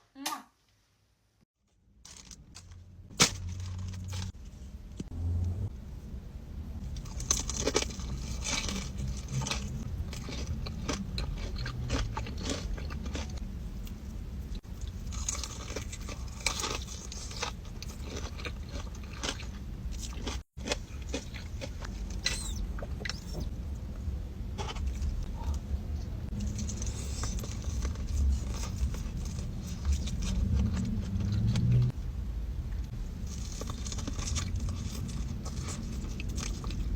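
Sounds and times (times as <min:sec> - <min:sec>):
crunchy food chewing: 0:07.0 - 0:14.0, 0:14.6 - 0:23.5, 0:26.3 - 0:31.8, 0:33.2 - 0:36.9.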